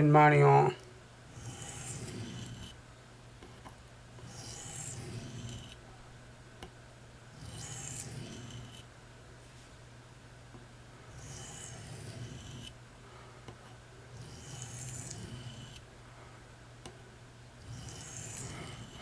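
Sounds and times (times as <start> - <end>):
knife blade scraping on oilstone: 1.3 - 2.8, 4.2 - 5.8, 7.4 - 8.8, 11.2 - 12.7, 14.2 - 15.8, 17.6 - 19.0.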